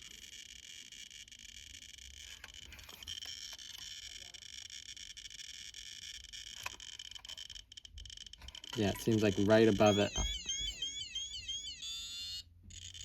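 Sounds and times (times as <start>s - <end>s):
high-pitched electronic buzz: 8.6s - 13.0s.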